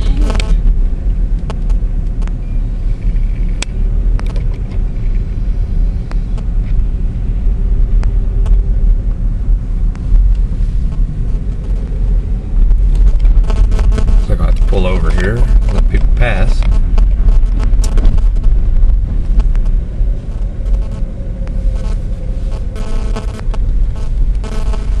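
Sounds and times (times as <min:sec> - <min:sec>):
car engine and road noise: 0:00.0 - 0:25.0
scattered clicks: 0:01.4 - 0:02.4, 0:12.9 - 0:19.8.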